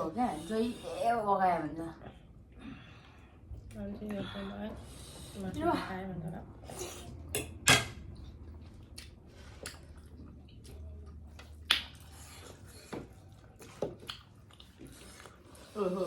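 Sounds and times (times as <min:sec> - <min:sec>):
people chewing food: 0:06.3 - 0:16.0
mouth clicks and smacks: 0:11.6 - 0:12.1.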